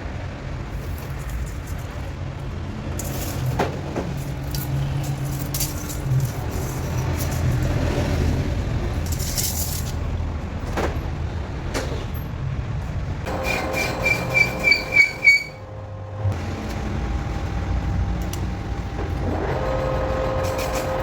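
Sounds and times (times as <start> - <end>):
metal clinks and knocks: 3.0 - 7.7, 9.0 - 10.0
workshop machinery humming: 13.3 - 21.0.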